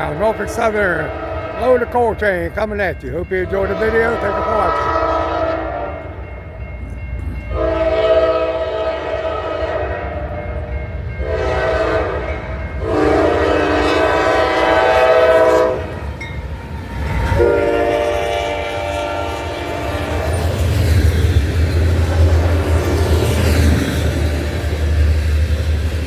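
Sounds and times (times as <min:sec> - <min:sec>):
diesel locomotive rumble: 0:00.0 - 0:26.0
locomotive air horn blasts: 0:01.0 - 0:01.8, 0:03.5 - 0:06.1, 0:07.5 - 0:10.4, 0:11.2 - 0:16.0, 0:17.4 - 0:20.4.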